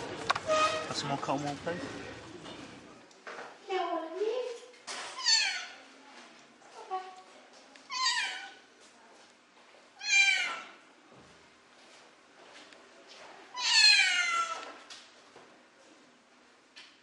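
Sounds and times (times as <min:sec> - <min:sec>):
kitten meowing: 0:10.0 - 0:10.7, 0:13.6 - 0:14.6.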